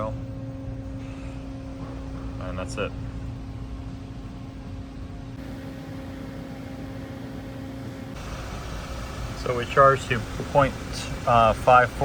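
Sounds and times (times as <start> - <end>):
car engine idling: 5.4 - 12.0.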